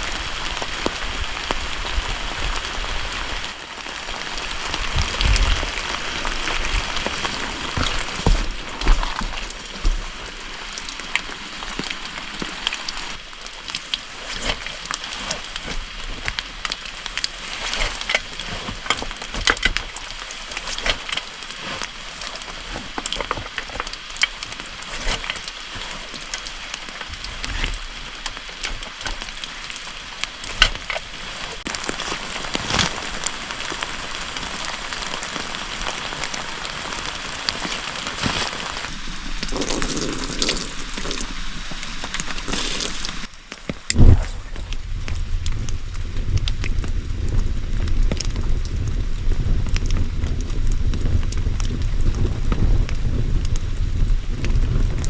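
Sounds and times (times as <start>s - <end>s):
campfire crackling and popping: 0.0s - 55.0s.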